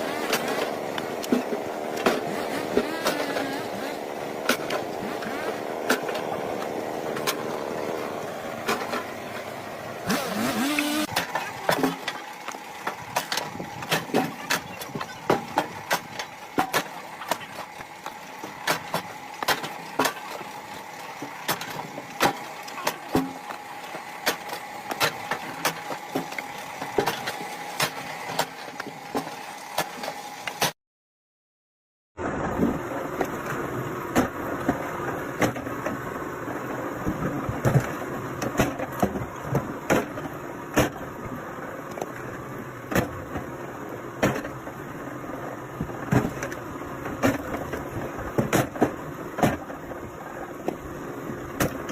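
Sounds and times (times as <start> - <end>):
machine hum: 0.0 - 30.6
firewood splitting knocks and cracks: 37.1 - 41.0, 46.1 - 49.7.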